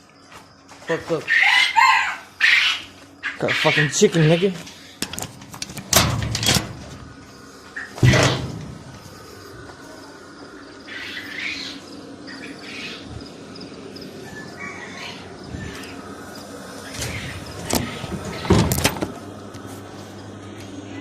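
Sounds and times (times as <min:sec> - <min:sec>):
chickens squawking: 0:01.2 - 0:05.0, 0:07.0 - 0:09.7, 0:10.5 - 0:18.7.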